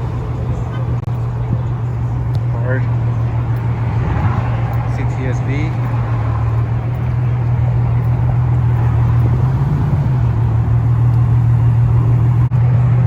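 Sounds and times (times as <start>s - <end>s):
car engine droning: 0.0s - 13.0s.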